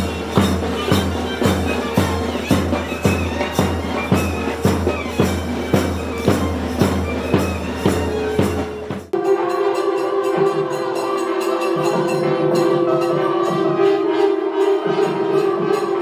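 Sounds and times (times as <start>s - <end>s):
drum strokes: 0.0s - 16.0s
reed pipe melody: 0.0s - 16.0s.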